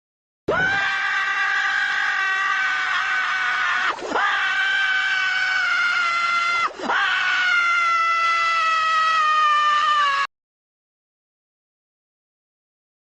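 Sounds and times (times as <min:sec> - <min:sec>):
high cartoon scream: 0:00.5 - 0:10.3.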